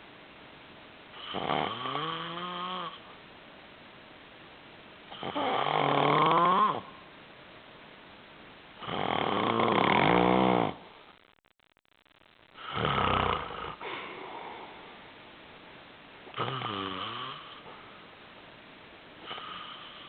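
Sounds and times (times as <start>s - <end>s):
loud snoring: 1.2s - 3.0s, 5.1s - 6.9s, 8.8s - 10.9s, 12.6s - 13.9s, 16.3s - 17.7s, 19.2s - 20.0s.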